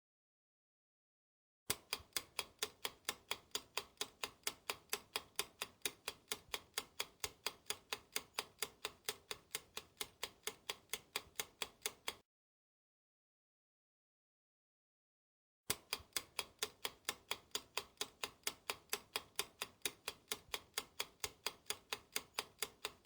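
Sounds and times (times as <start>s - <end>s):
clock ticking: 1.7s - 12.2s, 15.7s - 23.0s.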